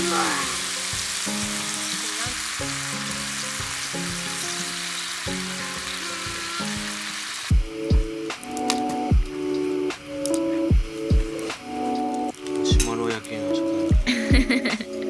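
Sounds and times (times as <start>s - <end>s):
food sizzling on griddle: 0.0s - 10.3s
slow background melody: 0.0s - 15.0s.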